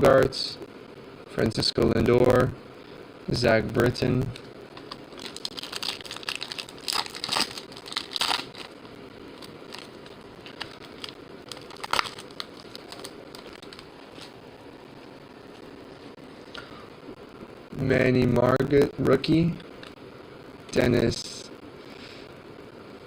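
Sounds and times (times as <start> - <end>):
foil wrapper crinkling: 4.4 - 14.4.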